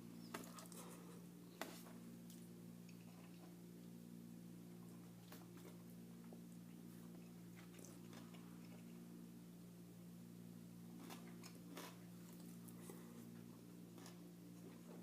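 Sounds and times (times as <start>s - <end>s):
low steady hum: 0.0s - 15.0s
chewing and biting: 6.7s - 9.0s, 10.9s - 15.0s.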